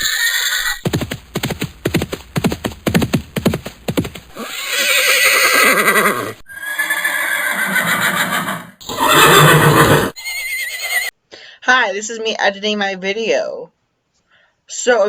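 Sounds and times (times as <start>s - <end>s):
horse neighing: 0.0s - 0.8s, 4.3s - 11.1s.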